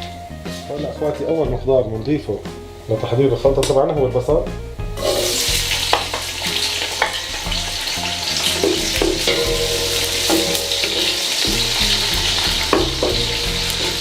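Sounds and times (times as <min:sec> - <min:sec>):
onion sizzling in hot oil: 0:00.0 - 0:01.6, 0:04.7 - 0:14.0
utensil knocking against pan: 0:06.9 - 0:14.0.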